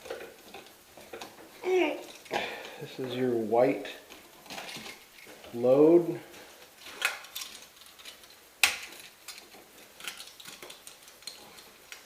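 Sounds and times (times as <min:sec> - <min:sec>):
wires clicking and tapping: 0:00.0 - 0:03.2, 0:06.6 - 0:12.0.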